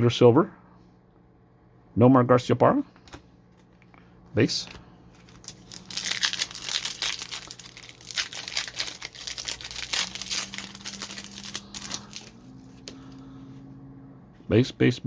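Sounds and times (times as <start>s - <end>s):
faint steady hum: 0.0s - 15.0s
foil wrapper and cards crinkling: 5.1s - 13.2s.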